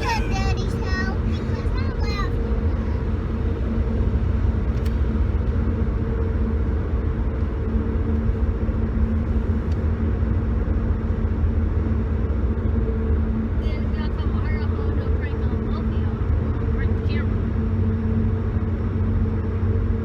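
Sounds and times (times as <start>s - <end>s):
faint steady hum: 0.0s - 20.0s
road and engine rumble in car: 0.0s - 20.0s.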